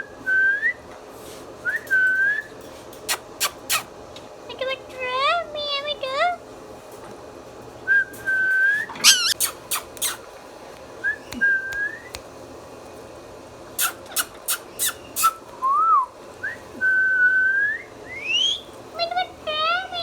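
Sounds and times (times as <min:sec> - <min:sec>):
parrot clicking calls: 0:03.1 - 0:03.9, 0:09.0 - 0:10.2, 0:13.8 - 0:15.4
parrot whistling: 0:08.7 - 0:10.2, 0:13.8 - 0:18.7.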